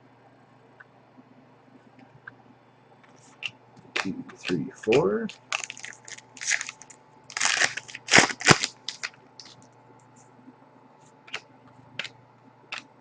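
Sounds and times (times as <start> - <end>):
trading cards snapping: 4.0 - 9.6, 12.0 - 12.9.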